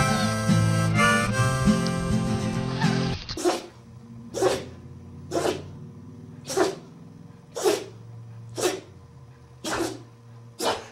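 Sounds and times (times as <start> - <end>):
puppy sneezing: 2.8 - 5.7, 6.4 - 6.9, 7.5 - 8.0, 8.6 - 8.9, 9.6 - 10.9.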